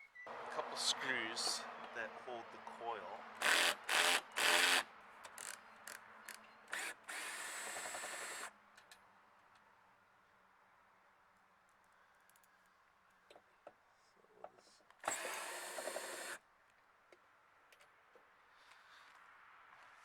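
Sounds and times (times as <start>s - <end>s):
cordless drill running: 3.4s - 4.8s, 6.7s - 8.5s, 15.0s - 16.4s.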